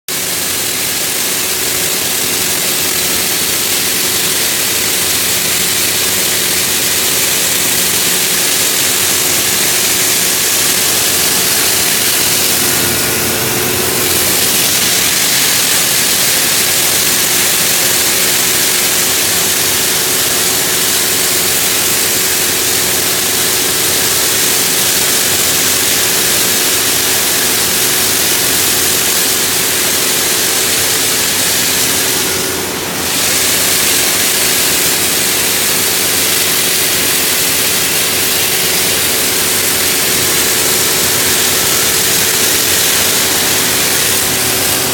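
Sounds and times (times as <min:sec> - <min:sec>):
engine and pump hum: 0:00.0 - 0:44.9
water jets hissing: 0:00.2 - 0:44.9.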